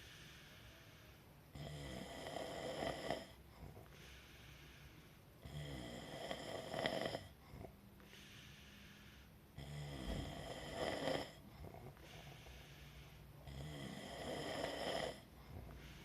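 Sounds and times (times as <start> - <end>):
loud snoring: 1.5 - 3.4, 5.4 - 7.7, 9.6 - 12.2, 13.4 - 16.0.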